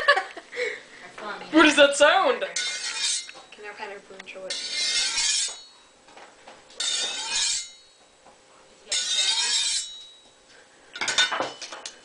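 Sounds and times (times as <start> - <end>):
blade scraping on sharpener: 2.6 - 3.4, 4.5 - 5.7, 6.8 - 7.8, 8.9 - 10.0.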